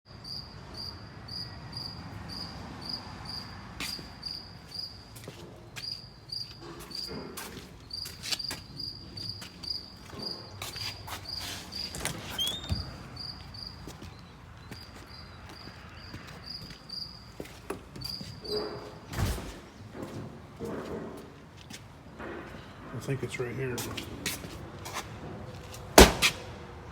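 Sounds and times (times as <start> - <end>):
cricket chirping: 0.1 - 19.5.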